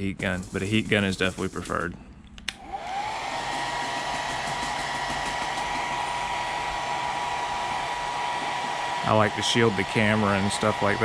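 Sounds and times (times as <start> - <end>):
hot-air blower motor whine: 2.6 - 11.0.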